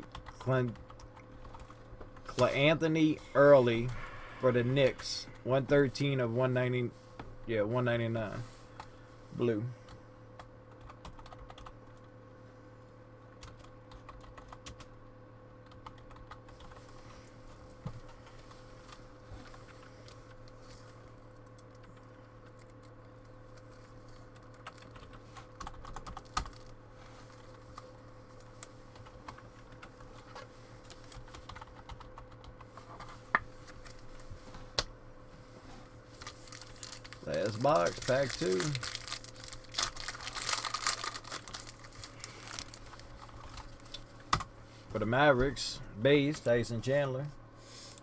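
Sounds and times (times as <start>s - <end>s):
low electrical hum: 0.0s - 48.0s
typing on computer keyboard: 10.7s - 12.0s, 13.4s - 14.9s, 24.4s - 26.5s, 31.2s - 32.6s.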